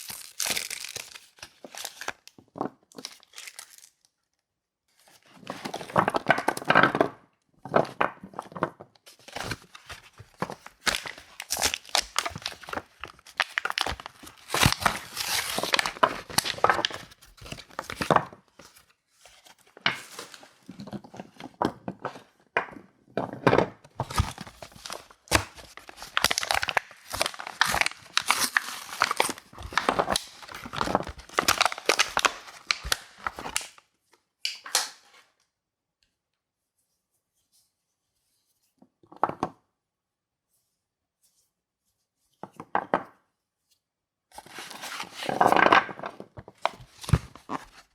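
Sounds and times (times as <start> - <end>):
packaging tearing and crinkling: 0.0 - 2.3, 2.9 - 4.1, 9.2 - 18.1, 24.0 - 33.8.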